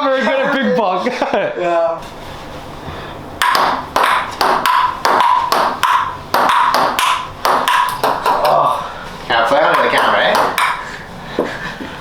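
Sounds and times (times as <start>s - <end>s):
ping pong ball hitting paddles: 3.4s - 8.8s, 9.4s - 11.0s.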